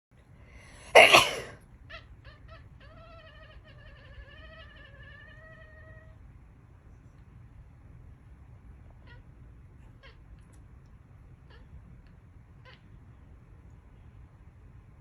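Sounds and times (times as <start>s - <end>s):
loud sneeze: 0.8s - 1.6s
cat meowing: 1.0s - 6.2s, 8.9s - 10.6s.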